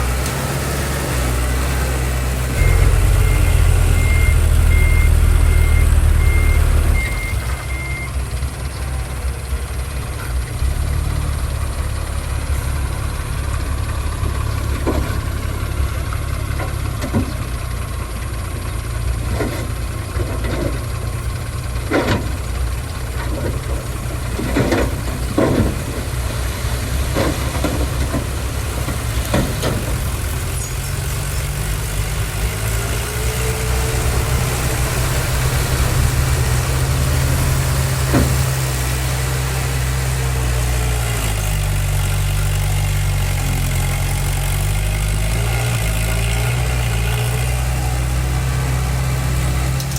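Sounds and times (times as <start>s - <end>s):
truck reversing beeper: 0.0s - 9.3s
heavy diesel engines droning: 0.0s - 49.9s.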